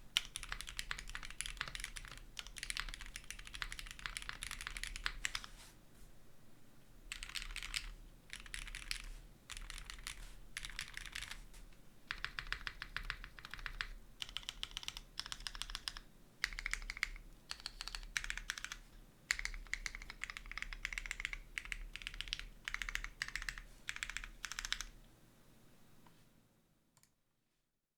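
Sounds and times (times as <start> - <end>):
mechanical keyboard clacking: 0.2 - 5.4, 7.1 - 11.4, 12.1 - 24.9.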